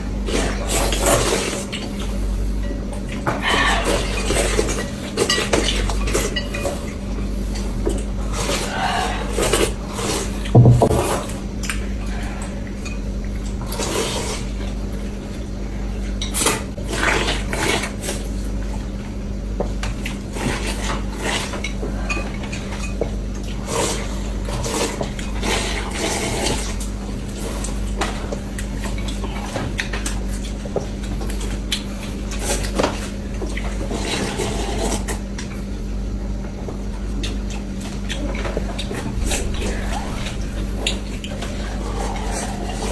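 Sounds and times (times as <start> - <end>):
steady low hum: 0.0 - 42.9
utensils clinking against bowls: 0.3 - 14.4, 20.4 - 26.8.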